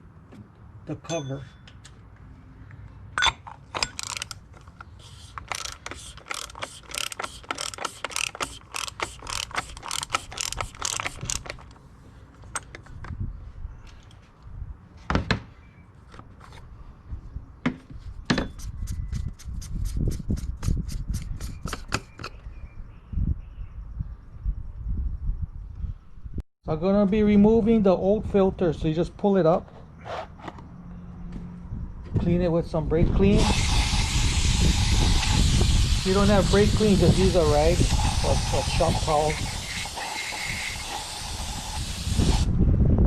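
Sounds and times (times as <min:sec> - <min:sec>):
ratchet clicking: 0:03.8 - 0:04.4, 0:05.0 - 0:11.7.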